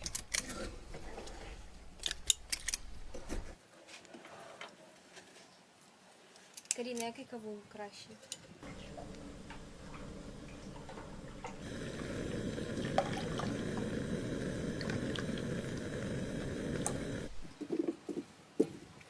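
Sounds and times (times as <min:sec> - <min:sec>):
water running: 0:08.6 - 0:17.5.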